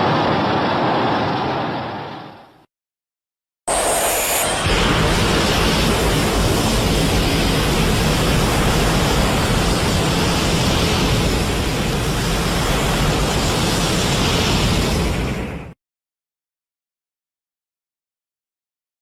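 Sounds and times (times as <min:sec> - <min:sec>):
loud rushing roar of noise: 0:00.0 - 0:02.6, 0:03.7 - 0:15.8.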